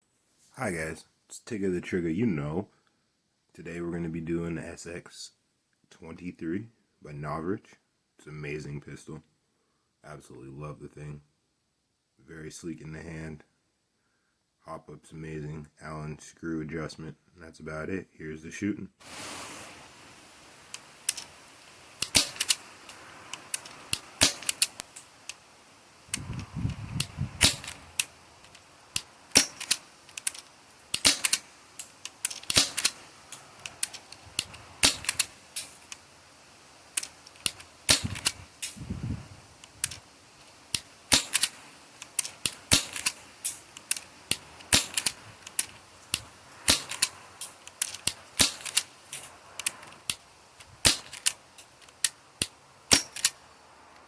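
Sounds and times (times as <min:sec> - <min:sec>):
airsoft pistol pops: 0:22.0 - 0:22.6, 0:23.6 - 0:24.9, 0:27.0 - 0:27.8, 0:29.0 - 0:29.8, 0:31.0 - 0:31.4, 0:32.5 - 0:33.0, 0:34.4 - 0:35.3, 0:37.4 - 0:38.8, 0:40.8 - 0:41.6, 0:42.4 - 0:43.2, 0:43.9 - 0:45.6, 0:46.2 - 0:47.1, 0:48.1 - 0:48.8, 0:50.8 - 0:51.4, 0:52.9 - 0:53.4.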